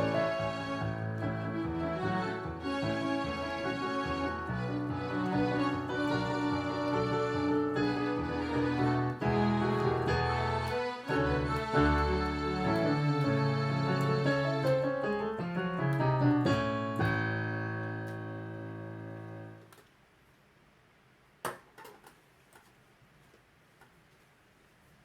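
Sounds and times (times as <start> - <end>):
solo piano: 0.0 - 19.7.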